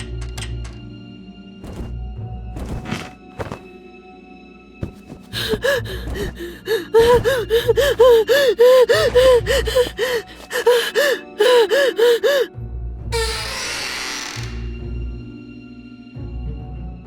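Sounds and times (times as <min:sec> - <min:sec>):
girl panting and gasping: 0:01.6 - 0:01.9, 0:02.6 - 0:03.6, 0:04.8 - 0:12.5.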